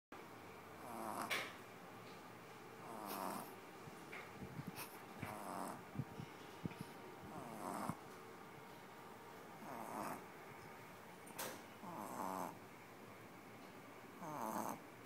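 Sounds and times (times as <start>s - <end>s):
puppy snoring: 0.8s - 1.6s, 2.8s - 3.6s, 4.6s - 6.1s, 6.7s - 8.0s, 9.6s - 10.2s, 11.8s - 12.6s, 14.2s - 14.8s.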